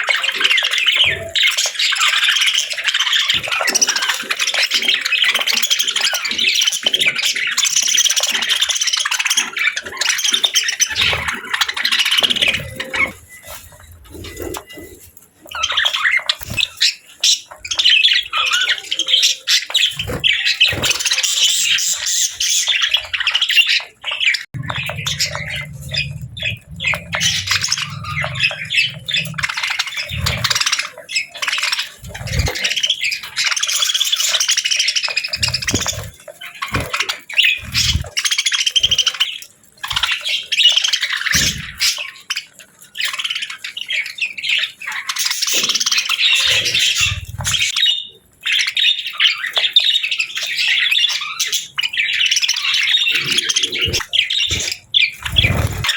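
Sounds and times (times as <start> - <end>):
budgerigars chirping and warbling: 0.0 - 55.9
low hum: 24.6 - 30.5.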